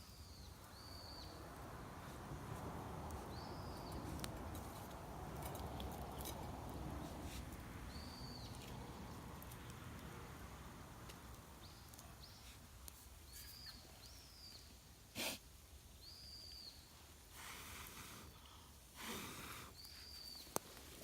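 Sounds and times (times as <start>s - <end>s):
small birds calling: 0.0s - 2.2s, 3.1s - 4.8s, 7.8s - 10.1s, 11.2s - 14.8s, 19.4s - 21.0s
faint low outdoor rumble: 0.0s - 21.0s.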